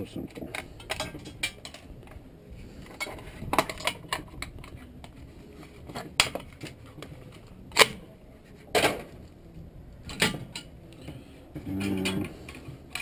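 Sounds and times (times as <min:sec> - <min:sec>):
metal parts clicking and knocking: 0:00.0 - 0:02.2, 0:10.0 - 0:10.8, 0:11.6 - 0:13.0.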